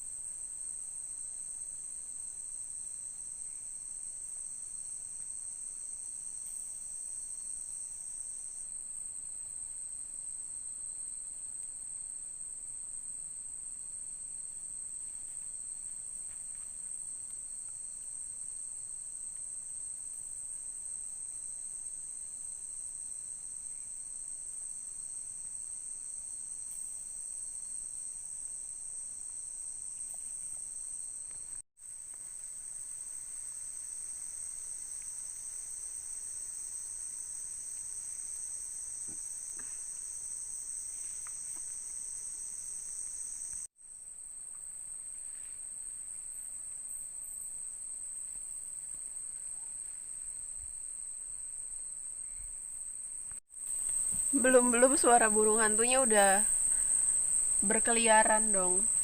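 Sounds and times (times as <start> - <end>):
crickets and insects chirring: 0.0 - 59.0.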